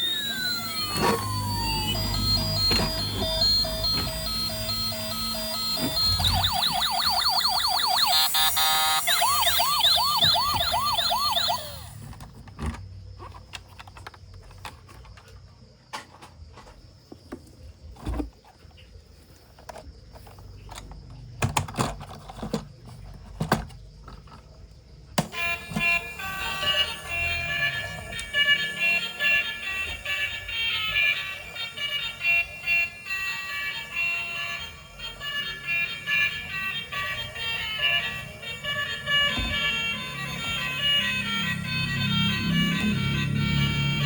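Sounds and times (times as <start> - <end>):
toy electronic siren: 0.0 - 12.3, 25.2 - 44.0.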